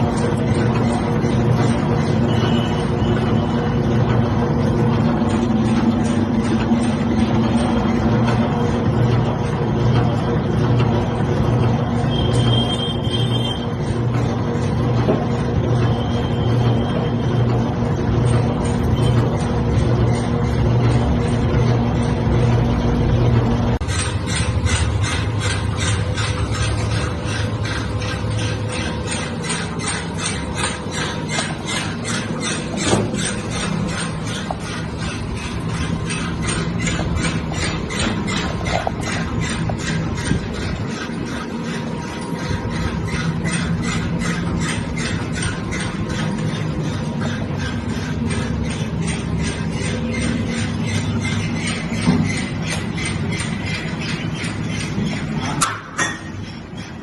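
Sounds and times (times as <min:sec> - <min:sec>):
machinery humming: 0:00.0 - 0:57.0
rhythmic machine clatter: 0:00.0 - 0:57.0.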